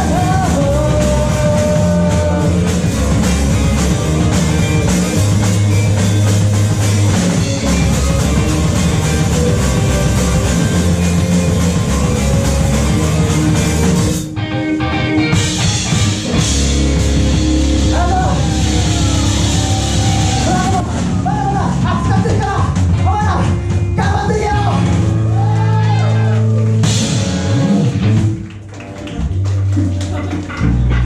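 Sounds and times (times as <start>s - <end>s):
person singing: 0.0s - 5.4s
live punk rock band: 0.0s - 31.0s.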